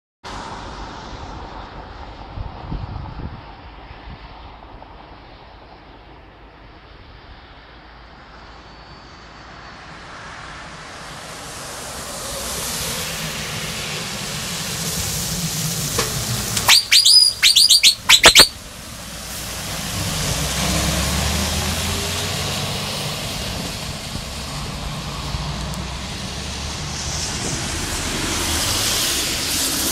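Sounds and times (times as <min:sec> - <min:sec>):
truck engine: 0:11.4 - 0:29.9
low diesel rumble: 0:13.1 - 0:28.6
high bird-like turbo whistles: 0:16.0 - 0:18.6.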